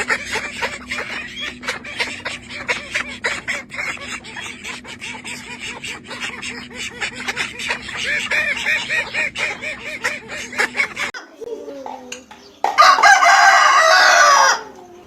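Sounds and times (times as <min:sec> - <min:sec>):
flock of birds calling: 0:00.0 - 0:11.2.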